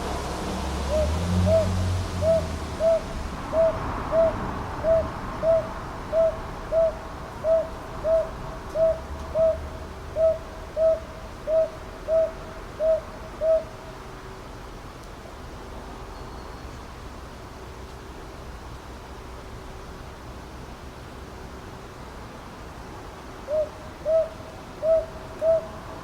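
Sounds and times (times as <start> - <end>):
owl hooting: 0.8 - 13.8, 23.4 - 25.8.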